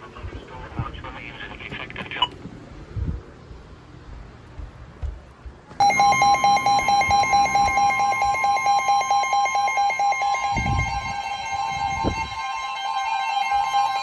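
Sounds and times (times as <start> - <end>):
rapid pulsed beeping: 5.8 - 14.0
steady alert tone: 5.8 - 14.0.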